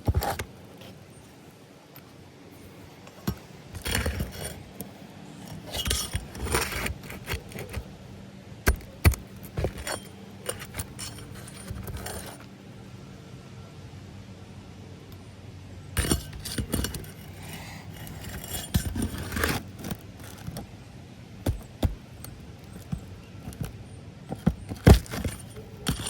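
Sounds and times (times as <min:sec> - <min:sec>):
scraping and rustling: 0:00.0 - 0:08.0, 0:08.7 - 0:12.6, 0:16.0 - 0:26.0
small metallic clinks: 0:08.7 - 0:12.5, 0:21.4 - 0:26.0.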